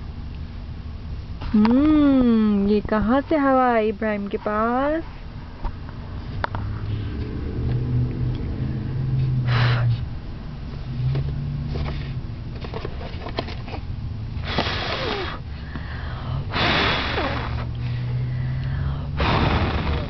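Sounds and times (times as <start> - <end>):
car engine hum: 0.0 - 20.0
baby blowing puffs of air: 9.5 - 10.0, 14.4 - 20.0.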